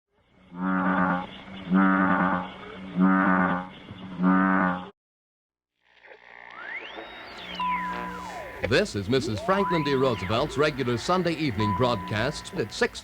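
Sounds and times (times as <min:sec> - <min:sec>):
bullfrog croaking: 0:00.4 - 0:04.9, 0:07.4 - 0:12.9
faint rising pitched sound: 0:06.5 - 0:12.8.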